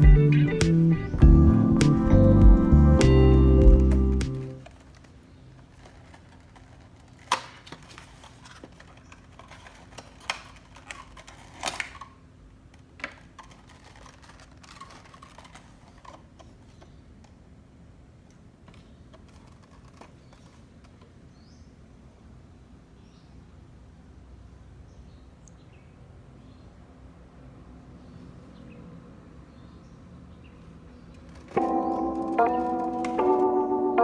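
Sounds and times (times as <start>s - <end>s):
small items clicking and tapping: 3.6s - 12.2s, 12.8s - 16.9s, 31.1s - 33.4s.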